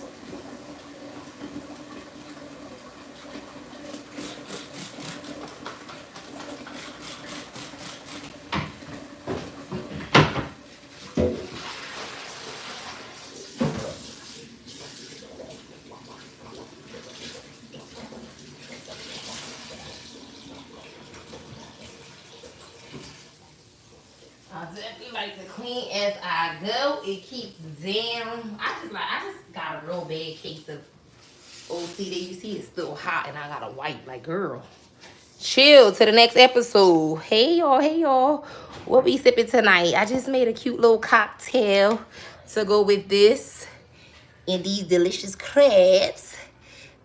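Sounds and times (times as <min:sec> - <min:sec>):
water running from tap into sink: 0:00.0 - 0:25.6
dishes knocking and clattering: 0:08.4 - 0:11.7.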